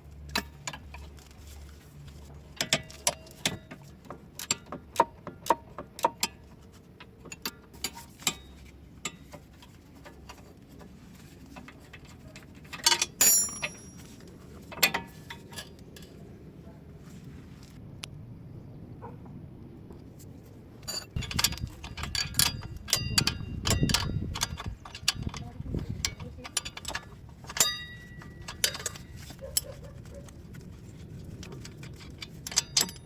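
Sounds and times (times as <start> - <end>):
wrench clicking on bolts: 2.6 - 9.3, 12.7 - 14.0, 20.9 - 29.8, 31.4 - 33.0
metallic clink: 12.9 - 14.3, 26.0 - 29.8, 31.6 - 33.0.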